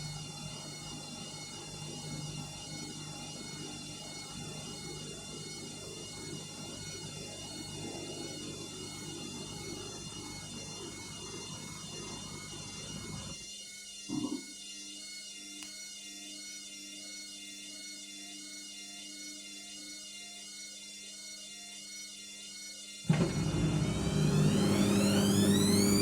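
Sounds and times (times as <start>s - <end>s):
washing machine drum motor: 23.1s - 26.0s.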